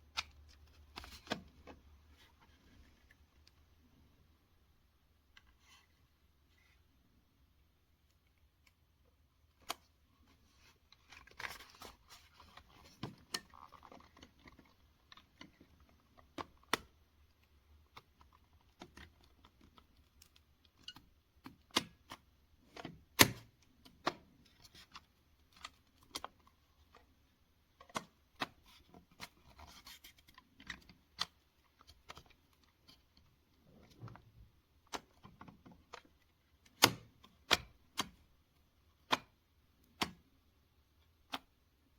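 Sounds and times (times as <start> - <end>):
soft rustling and scratching: 0.4 - 3.6.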